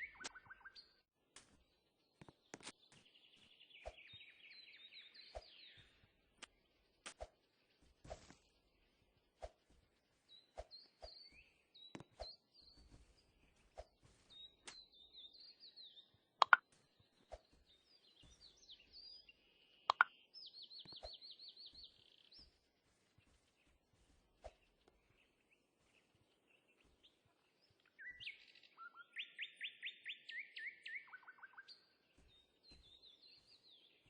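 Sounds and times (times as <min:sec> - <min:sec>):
small birds chirping: 0:00.0 - 0:34.0
sharp clicks: 0:16.4 - 0:16.6, 0:19.9 - 0:20.1.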